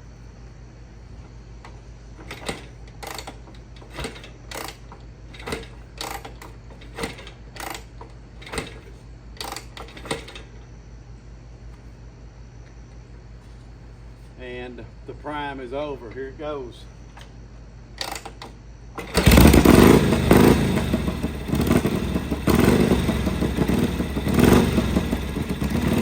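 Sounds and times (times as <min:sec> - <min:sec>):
motorcycle priming clacks: 0:02.2 - 0:10.4, 0:18.0 - 0:26.0
steady low hum: 0:18.6 - 0:26.0.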